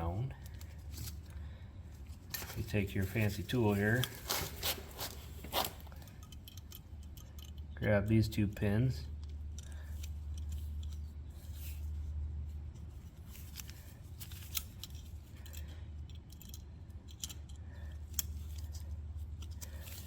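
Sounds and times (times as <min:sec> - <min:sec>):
steady low hum: 0:00.0 - 0:20.0
metal tool clicks and scrapes: 0:03.6 - 0:07.8, 0:08.6 - 0:11.9, 0:12.7 - 0:20.0.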